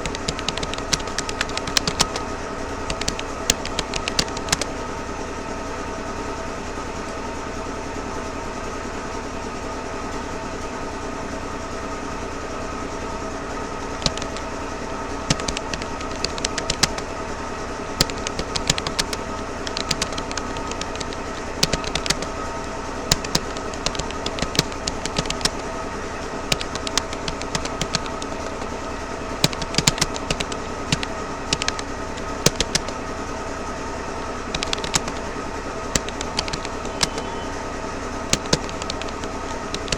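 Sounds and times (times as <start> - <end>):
keyboard keystroke clicks: 0.0 - 2.3, 2.9 - 4.7, 14.0 - 14.5, 15.3 - 17.1, 18.0 - 22.3, 23.1 - 25.6, 26.5 - 28.8, 29.4 - 33.0, 34.5 - 35.3, 35.9 - 37.5, 38.3 - 39.9
steady droning hum: 13.2 - 39.9.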